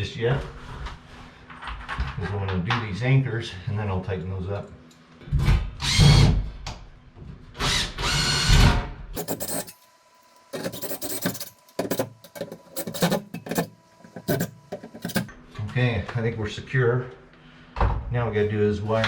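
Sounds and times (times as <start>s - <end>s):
power drill running: 7.6s - 8.6s.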